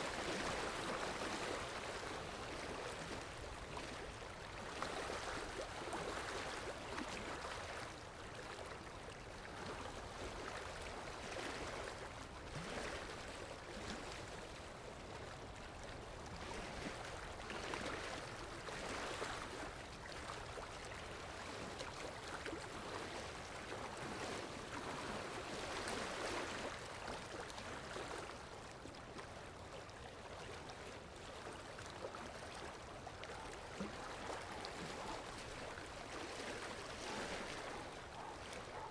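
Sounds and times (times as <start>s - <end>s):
floodwater rushing: 33.4s - 38.9s.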